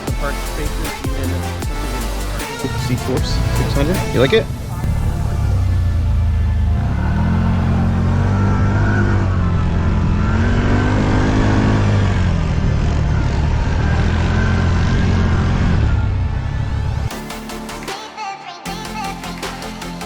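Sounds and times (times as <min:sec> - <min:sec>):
atv engine revving: 0:02.8 - 0:16.0.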